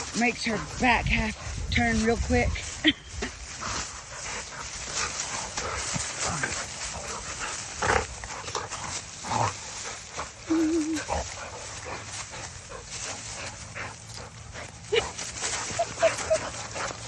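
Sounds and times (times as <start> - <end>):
dogs barking and yelping: 10.0 - 17.0.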